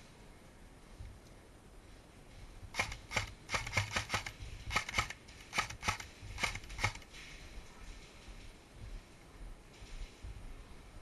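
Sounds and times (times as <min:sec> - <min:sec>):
airsoft gun shots: 0:02.8 - 0:07.0.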